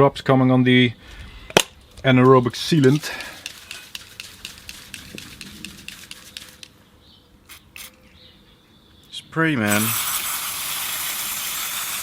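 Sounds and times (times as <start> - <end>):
rag scrubbing metal: 2.7 - 6.7.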